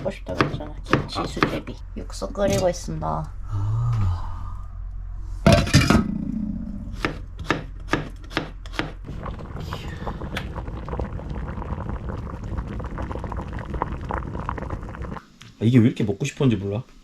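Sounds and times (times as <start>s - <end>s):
knife chopping on cutting board: 0.0s - 1.6s, 7.0s - 9.0s.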